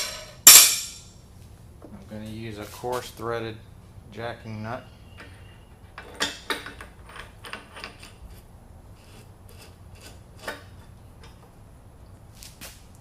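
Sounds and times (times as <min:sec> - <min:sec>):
metal parts clicking and scraping: 0:05.2 - 0:11.4.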